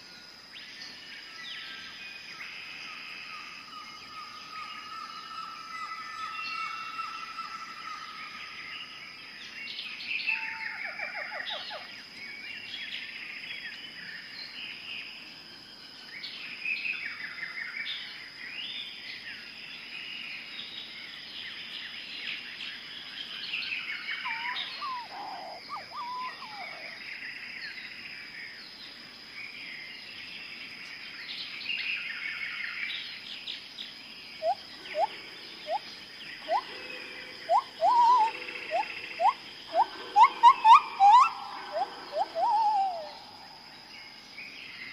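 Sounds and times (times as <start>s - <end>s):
birds chirping and trilling: 21.5s - 28.0s, 29.4s - 44.9s
sharp rising bird calls: 24.2s - 27.0s, 34.4s - 35.8s, 36.4s - 43.6s.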